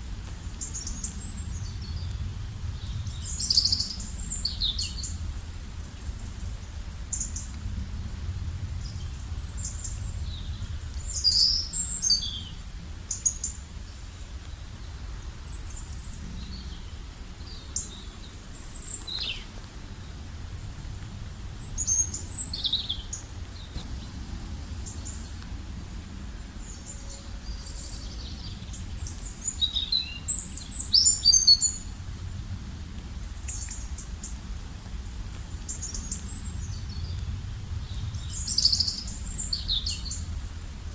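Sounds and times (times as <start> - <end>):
low rumble: 0.0 - 11.9, 15.4 - 29.5
birds chirping and trilling: 21.6 - 25.4.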